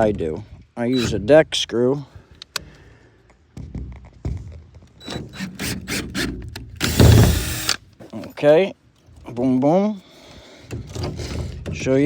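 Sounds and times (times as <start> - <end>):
knocks and scraping of screws: 4.0 - 8.3.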